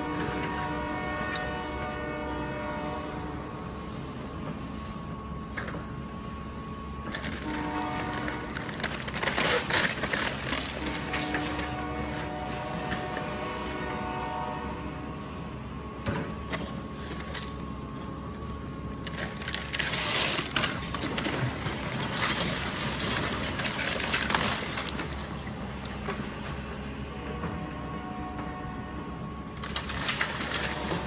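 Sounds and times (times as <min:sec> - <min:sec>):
excavator engine humming: 0:00.0 - 0:31.0
crashes and clattering debris: 0:07.2 - 0:11.8, 0:19.0 - 0:25.5, 0:29.6 - 0:31.0.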